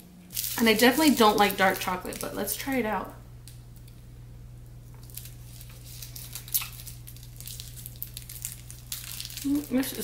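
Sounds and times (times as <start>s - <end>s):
low steady hum: 0.0s - 10.0s
wrapper crinkling and tearing: 0.3s - 4.0s, 4.9s - 10.0s.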